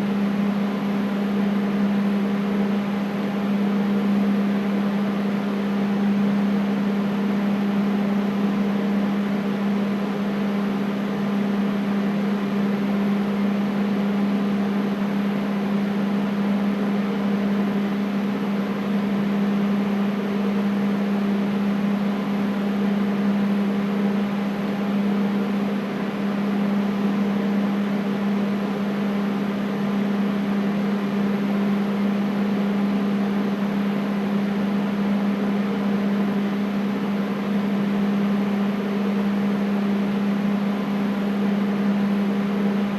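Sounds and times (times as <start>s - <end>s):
air conditioner humming: 0.0s - 42.9s.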